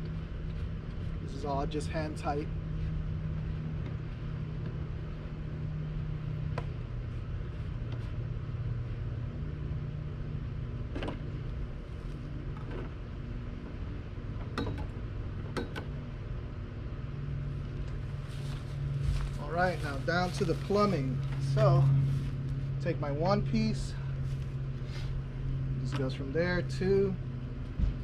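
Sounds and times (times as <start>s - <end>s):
low mechanical hum: 0.0s - 28.0s
sharp clicks and knocks: 14.4s - 15.9s.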